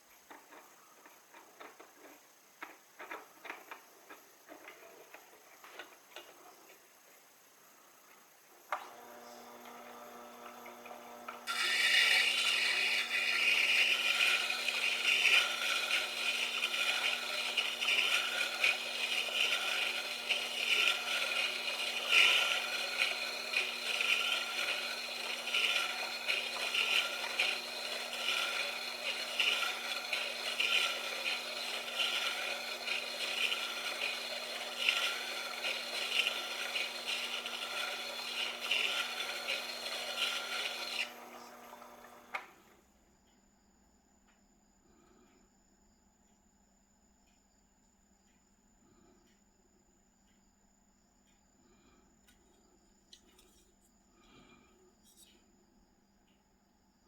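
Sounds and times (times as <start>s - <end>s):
sharpening machine humming: 8.6s - 42.7s
drill bit grinding on stone: 8.8s - 42.3s.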